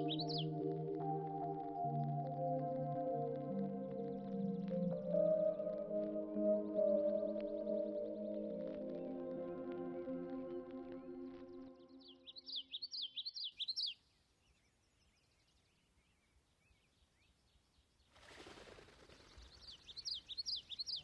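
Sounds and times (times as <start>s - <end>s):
small bird chirping: 0.0s - 0.6s, 11.8s - 17.7s, 19.2s - 21.0s
background music: 0.0s - 12.7s.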